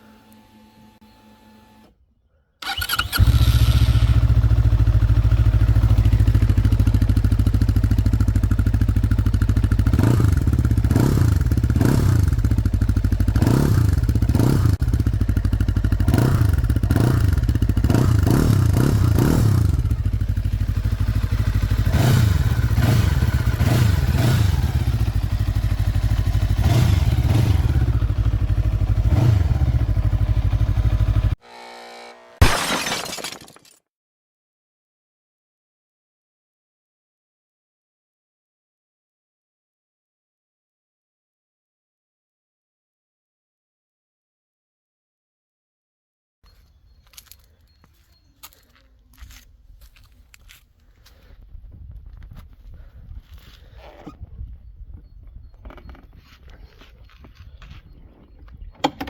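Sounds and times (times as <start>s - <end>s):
motorcycle engine idling and revving: 2.6s - 32.4s, 46.5s - 59.0s.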